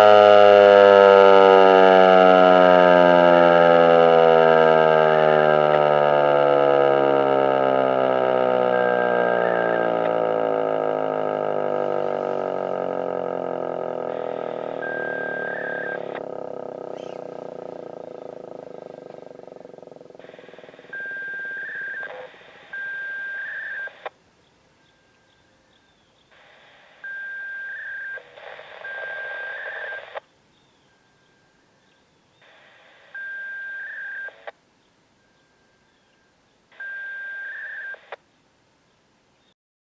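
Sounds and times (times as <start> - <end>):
warning siren winding down: 0.0 - 24.1
radio hiss with data tone: 8.7 - 10.2, 12.1 - 24.2, 26.2 - 30.4, 32.3 - 34.6, 36.7 - 38.3
radio click: 20.2 - 24.2, 26.4 - 30.3, 32.4 - 34.6, 36.8 - 38.2.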